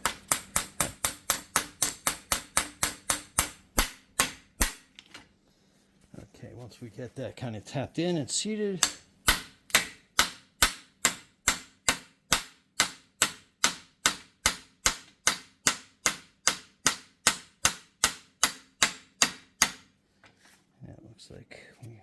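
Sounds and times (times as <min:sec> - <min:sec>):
hammer striking metal: 0:00.0 - 0:04.9, 0:08.8 - 0:19.8.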